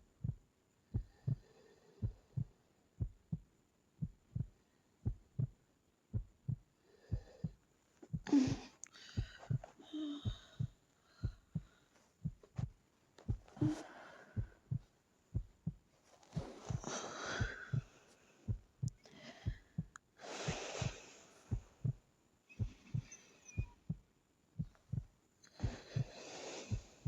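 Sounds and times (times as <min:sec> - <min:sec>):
woman breathing slowly: 0:00.2 - 0:03.2, 0:06.1 - 0:24.0, 0:24.6 - 0:27.0
short low thumps: 0:02.0 - 0:03.4, 0:04.0 - 0:12.7, 0:13.3 - 0:13.8, 0:14.4 - 0:17.9, 0:18.5 - 0:19.9.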